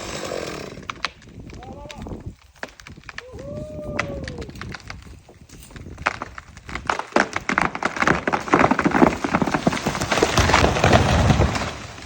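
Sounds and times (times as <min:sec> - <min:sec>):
wood cracking and splintering: 0:00.0 - 0:12.0.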